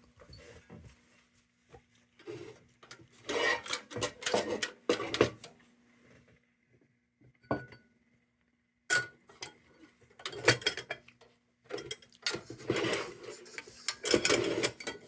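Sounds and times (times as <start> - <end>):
clattering and rubbing: 12.4 - 15.0.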